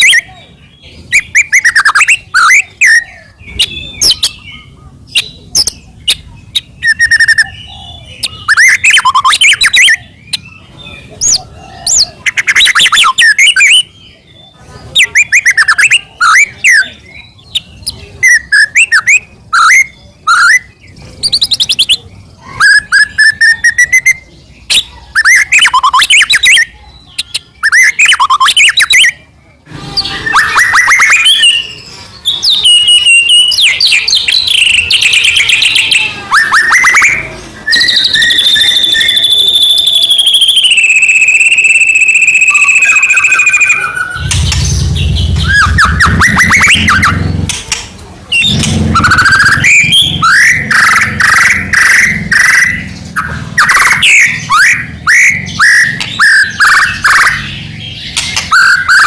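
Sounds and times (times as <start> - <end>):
bird singing varied whistled song: 0.0 - 29.2, 30.1 - 47.2, 48.3 - 59.0.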